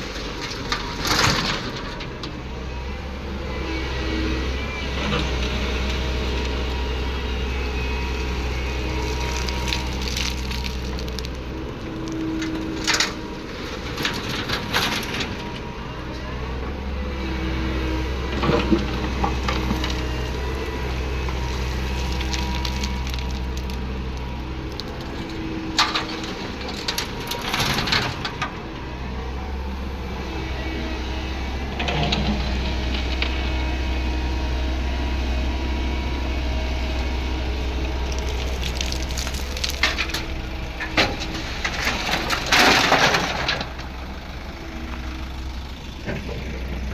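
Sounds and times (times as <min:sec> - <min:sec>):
excavator diesel engine running: 0:00.0 - 0:46.9
crushed stone clattering: 0:38.0 - 0:43.8.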